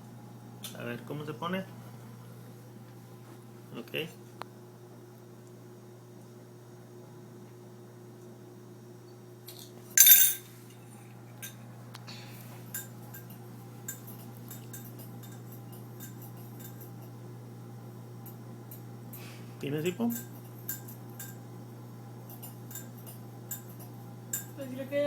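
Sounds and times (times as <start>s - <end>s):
glass and metal tableware clinking: 10.0s - 10.5s.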